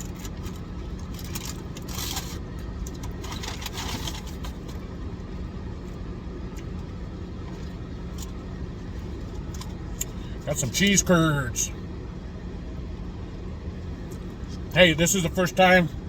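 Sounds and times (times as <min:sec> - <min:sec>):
steady low hum: 0:00.0 - 0:16.0
paper bag rustling and crinkling: 0:03.0 - 0:04.8.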